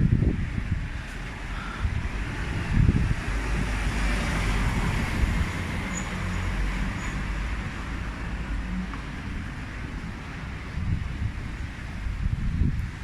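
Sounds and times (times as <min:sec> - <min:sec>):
wind buffeting microphone: 0:00.0 - 0:13.0
vehicle passing with tyre hiss: 0:01.0 - 0:11.9.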